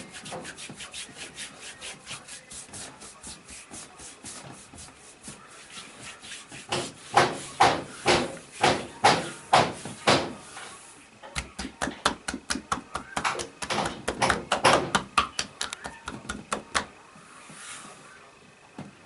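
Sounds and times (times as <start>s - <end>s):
hands slapping a body: 11.3s - 16.9s.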